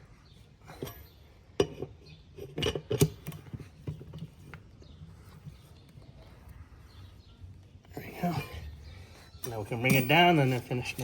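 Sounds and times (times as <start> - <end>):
lug wrench clinking on nuts: 9.4 - 11.0.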